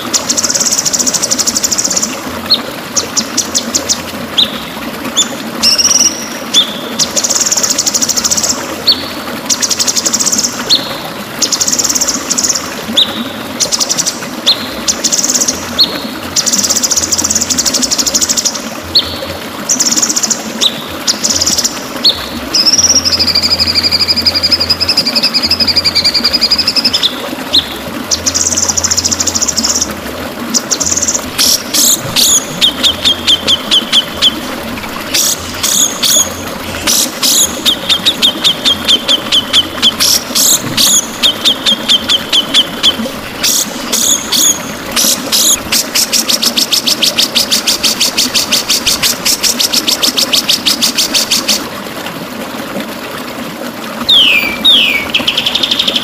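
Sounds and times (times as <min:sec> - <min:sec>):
bird singing trills: 0:30.6 - 0:34.4, 0:37.2 - 0:44.7, 0:54.1 - 0:56.0
long bird whistle: 0:54.1 - 0:55.8.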